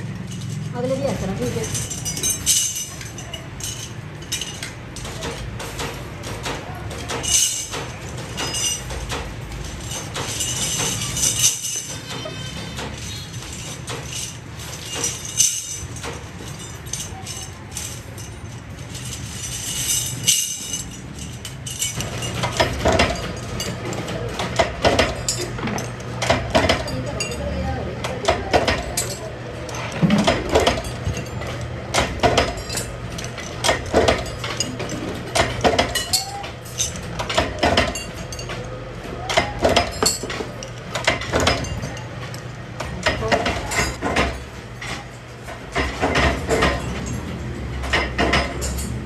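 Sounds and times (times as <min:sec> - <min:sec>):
steel pieces clinking: 0:00.0 - 0:49.0.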